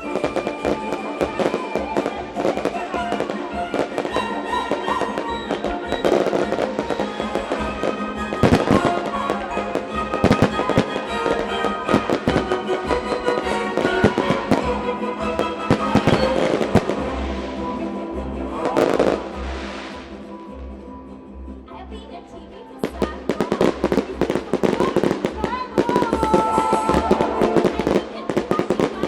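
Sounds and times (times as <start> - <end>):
fireworks shells bursting: 0.0 - 17.7
music soundtrack: 0.0 - 29.0.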